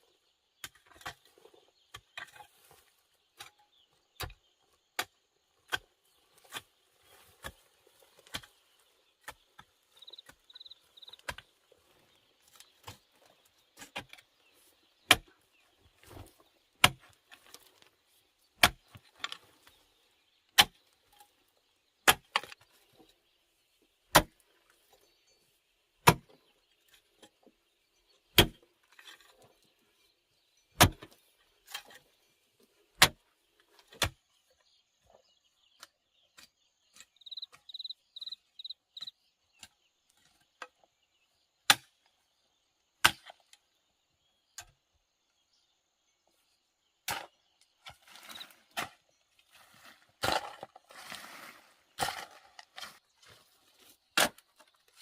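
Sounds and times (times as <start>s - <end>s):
insects chirping: 10.0s - 11.2s, 37.2s - 39.1s
wood being chopped: 16.8s - 17.1s, 18.6s - 18.8s, 20.6s - 20.8s, 22.0s - 22.5s, 24.1s - 24.3s, 26.0s - 26.3s, 28.4s - 28.6s, 30.8s - 31.1s, 54.2s - 54.4s.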